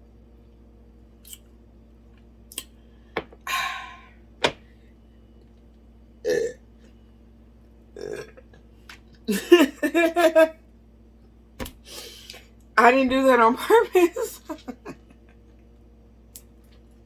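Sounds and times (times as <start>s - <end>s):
woman burping: 6.2s - 6.6s, 8.0s - 8.5s.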